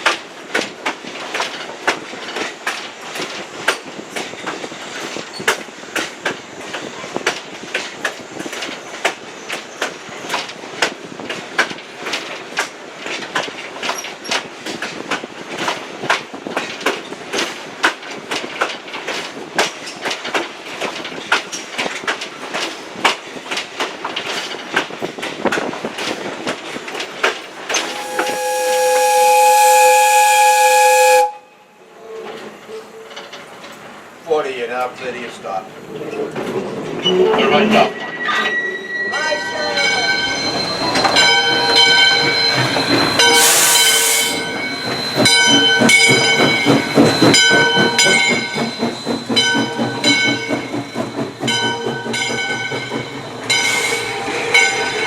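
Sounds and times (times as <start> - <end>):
train wheels clacking on rails: 0.0 - 31.4, 39.4 - 55.0
steam whistle blast: 27.7 - 31.8, 43.2 - 44.5.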